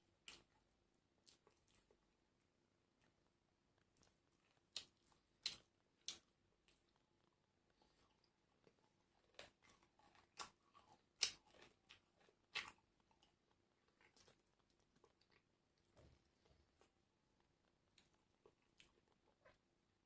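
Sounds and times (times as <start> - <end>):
soft chewing: 0.0 - 20.0
crunching fried food: 3.8 - 17.0.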